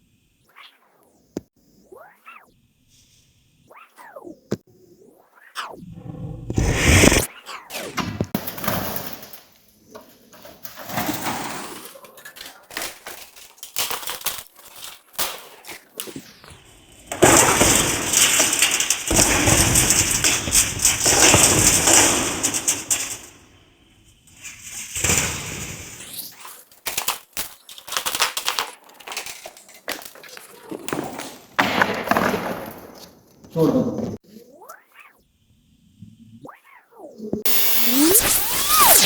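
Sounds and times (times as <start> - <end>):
welding arc crackling: 12.7 - 26.2, 37.5 - 39.0.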